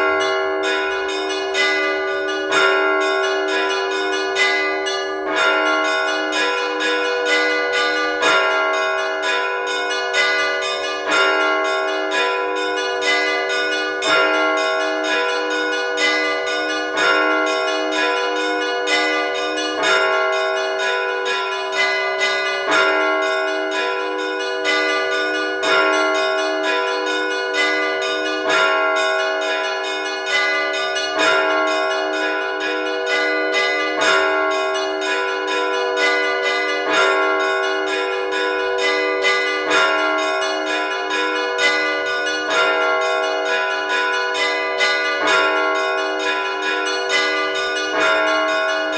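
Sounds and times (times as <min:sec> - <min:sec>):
church bells pealing: 0:00.0 - 0:48.9
hum of ringing bells: 0:00.0 - 0:48.9.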